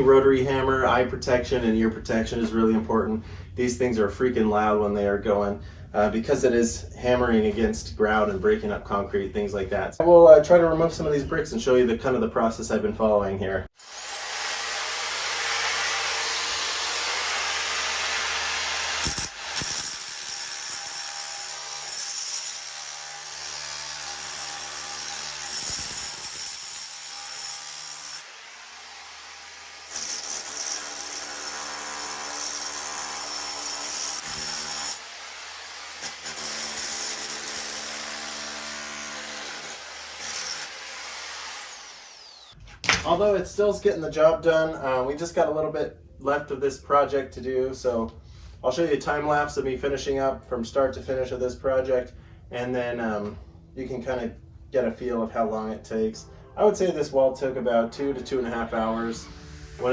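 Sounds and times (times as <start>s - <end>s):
rotary hammer chiselling grout: 13.8s - 41.9s.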